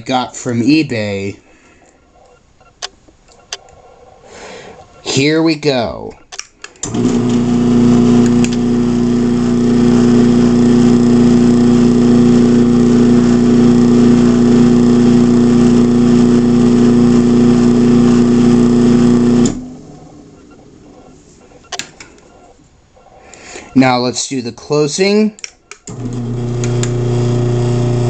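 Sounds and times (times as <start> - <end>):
garage door opener motor humming: 6.8 - 21.1, 25.9 - 28.0.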